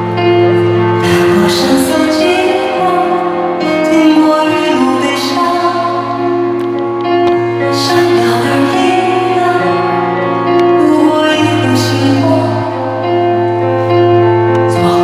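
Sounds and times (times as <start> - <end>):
high male voice singing: 1.0 - 6.3.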